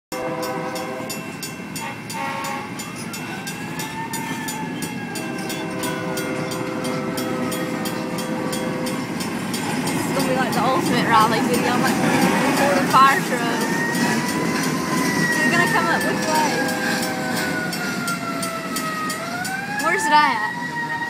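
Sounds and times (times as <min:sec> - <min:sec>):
train horn blasts: 0:00.1 - 0:03.1, 0:05.1 - 0:09.1
train clatter on rails: 0:00.1 - 0:21.0.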